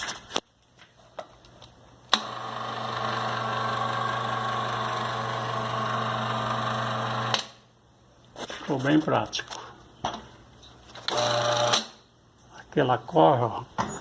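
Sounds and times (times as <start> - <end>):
electric motor humming: 2.1 - 7.4.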